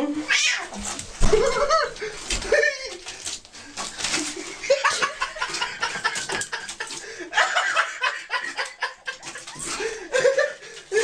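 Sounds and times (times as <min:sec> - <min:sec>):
person chuckling: 0:01.3 - 0:03.2, 0:04.2 - 0:11.0.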